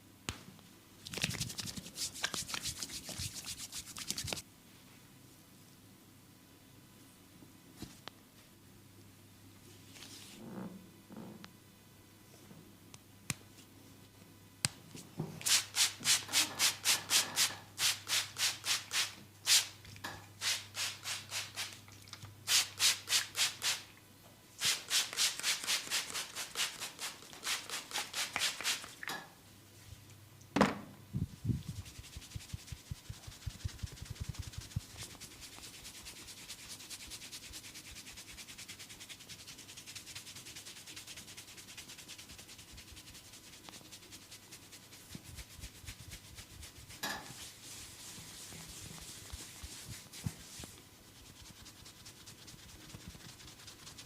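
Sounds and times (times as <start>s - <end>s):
hands rubbing briskly: 1.1s - 4.4s, 24.7s - 28.9s, 31.6s - 54.0s.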